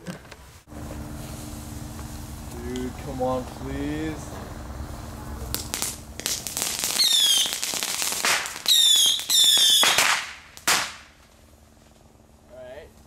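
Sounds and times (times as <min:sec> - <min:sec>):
firework whistles: 0:04.8 - 0:11.2
firework sharp bang: 0:05.2 - 0:11.2
fireworks crackling pops: 0:05.4 - 0:12.1.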